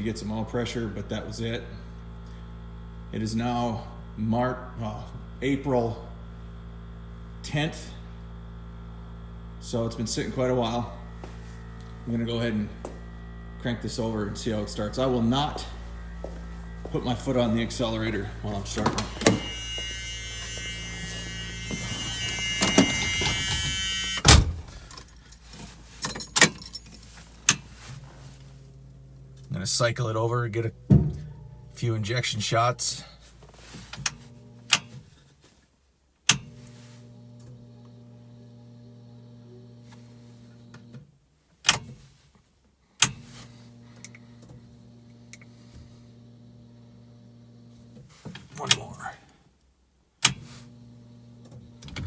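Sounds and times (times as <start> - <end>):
electric hum: 0.0 - 35.1, 36.4 - 41.0, 43.5 - 48.0, 50.6 - 52.0
electric fuel pump whining: 0.0 - 35.2, 36.3 - 41.1, 42.9 - 48.8, 50.2 - 52.0
keys rattling: 21.8 - 27.9.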